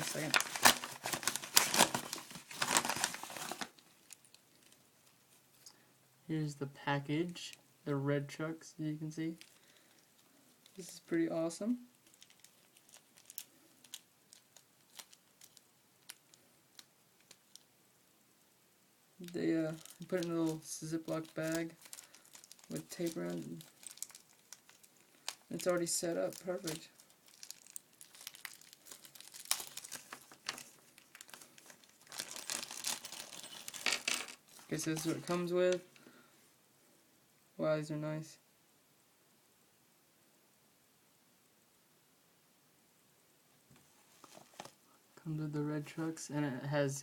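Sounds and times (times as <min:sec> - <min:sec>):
plastic bag crinkling: 0:00.0 - 0:04.8, 0:09.4 - 0:11.0, 0:11.9 - 0:17.7, 0:19.2 - 0:36.0.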